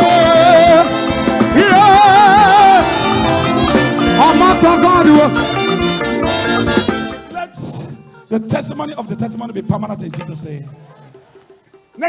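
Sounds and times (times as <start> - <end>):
person singing with vibrato: 0.0 - 6.3
latin dance music: 0.0 - 12.0.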